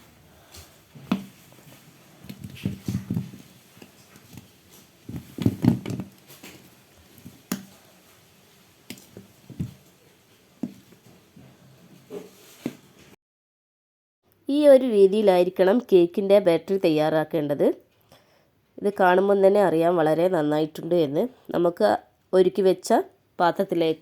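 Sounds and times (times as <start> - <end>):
spoon stirring thick batter: 0.5 - 11.5.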